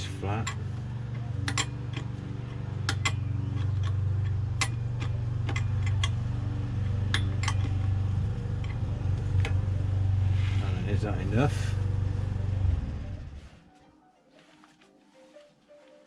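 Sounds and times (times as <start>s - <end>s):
steady low hum: 0.0s - 13.7s
light metallic clicks and taps: 0.4s - 6.2s, 6.9s - 7.9s.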